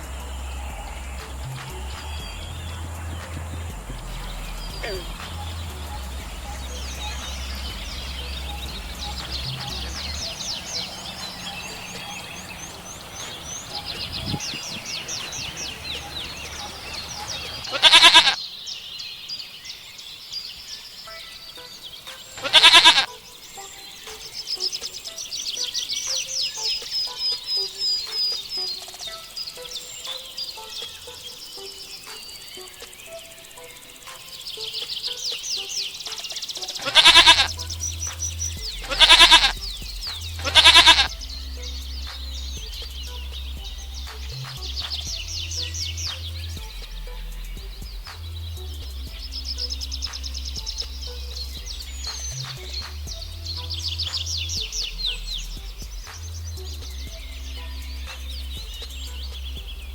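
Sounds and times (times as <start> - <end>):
small birds chirping: 0.0 - 59.9
songbird singing: 0.0 - 59.9
goat bleating: 17.7 - 18.4, 22.4 - 23.1, 36.8 - 37.6, 38.8 - 39.6, 40.4 - 41.1.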